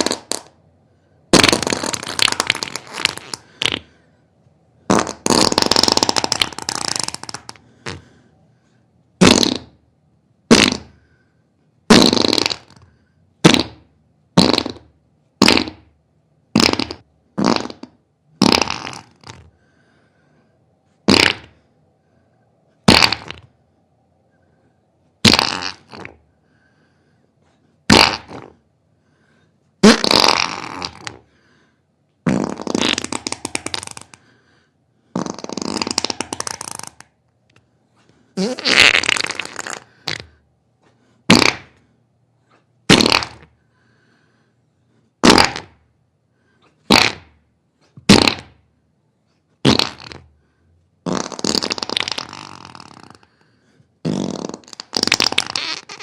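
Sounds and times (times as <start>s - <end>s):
farts: 0.0s - 0.6s, 1.3s - 4.0s, 4.9s - 8.1s, 9.2s - 9.8s, 10.5s - 11.1s, 11.9s - 19.5s, 21.0s - 21.6s, 22.8s - 23.5s, 25.2s - 26.2s, 27.9s - 28.6s, 29.8s - 31.3s, 32.2s - 34.3s, 35.1s - 37.1s, 38.4s - 40.4s, 41.3s - 41.9s, 42.5s - 43.6s, 45.2s - 45.8s, 46.8s - 48.6s, 49.6s - 50.3s, 51.0s - 53.4s, 54.0s - 56.0s.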